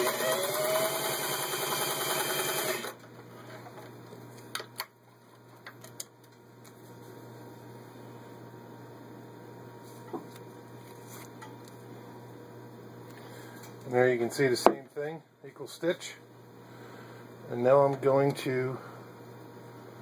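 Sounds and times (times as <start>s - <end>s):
sewing machine running: 0.0s - 3.0s.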